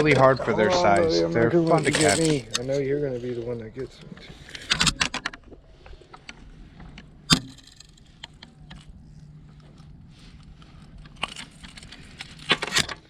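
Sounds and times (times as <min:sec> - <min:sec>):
faint low hum: 0:00.0 - 0:12.9
fishing tackle clicking and rattling: 0:04.5 - 0:08.9.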